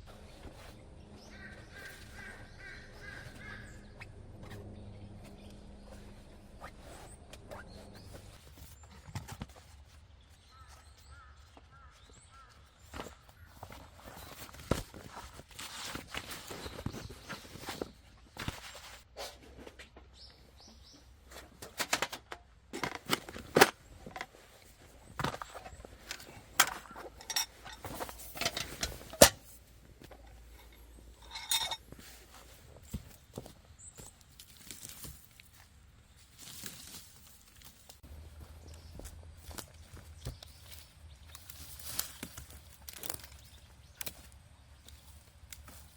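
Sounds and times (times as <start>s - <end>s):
bird chirping: 0.0s - 9.6s
footsteps and rustling on ground: 0.0s - 21.7s, 22.8s - 45.9s
metal cookware clinking: 26.6s - 29.4s, 30.2s - 31.9s.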